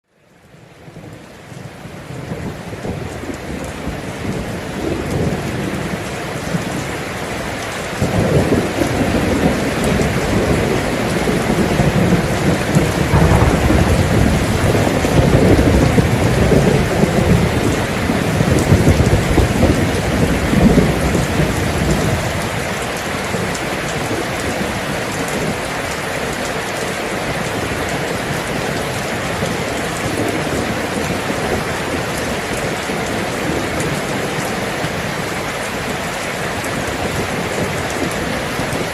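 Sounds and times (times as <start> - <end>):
heavy rain: 0.0 - 38.9
rolling thunder rumble: 8.0 - 25.6.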